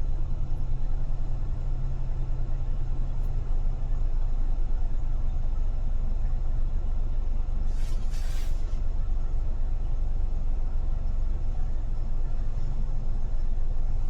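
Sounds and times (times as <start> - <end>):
car engine and road noise: 0.0 - 14.0
short hiss: 7.7 - 8.8.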